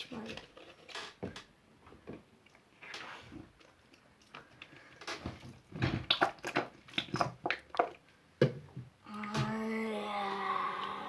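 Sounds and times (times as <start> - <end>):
slime squelching by hand: 2.8 - 8.1.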